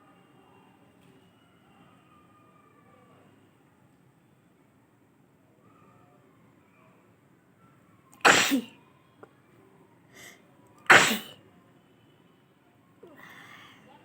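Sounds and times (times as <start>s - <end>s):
woman sneezing: 8.2s - 8.7s, 10.9s - 11.3s.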